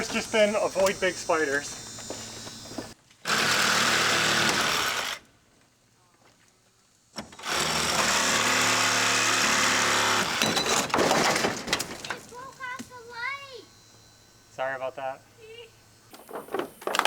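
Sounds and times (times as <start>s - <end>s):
power tool motor whirring: 0.0s - 5.3s, 7.2s - 10.9s.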